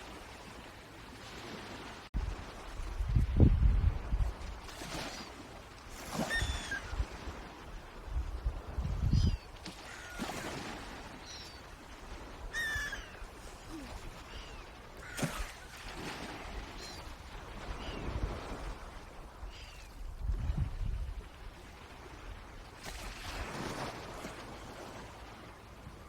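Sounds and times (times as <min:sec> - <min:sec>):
wind rumble: 0:02.2 - 0:04.6
short high bird calls: 0:06.3 - 0:06.9, 0:12.5 - 0:13.2.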